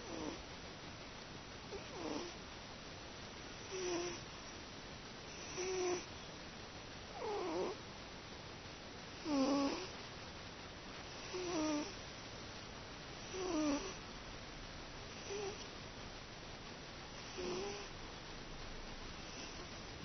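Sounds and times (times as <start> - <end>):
cat snoring: 0.0 - 0.4, 1.7 - 2.4, 3.5 - 4.2, 5.3 - 6.1, 7.1 - 7.8, 9.2 - 9.9, 11.1 - 12.0, 13.2 - 14.0, 15.1 - 15.7, 17.2 - 17.9, 19.2 - 19.9.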